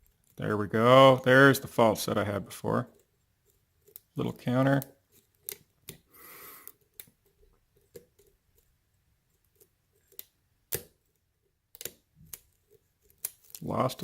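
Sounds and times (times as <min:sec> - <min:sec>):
lock pick clicking and scraping: 0:00.0 - 0:00.4, 0:02.9 - 0:13.7.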